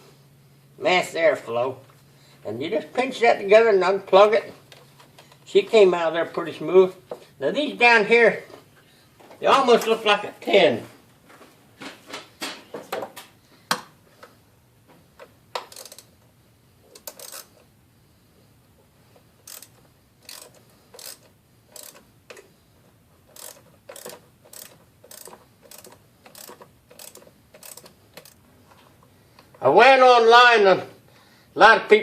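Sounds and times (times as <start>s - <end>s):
hand tools clicking and rattling: 15.2s - 16.1s, 16.9s - 17.6s, 19.4s - 22.5s, 23.2s - 28.9s.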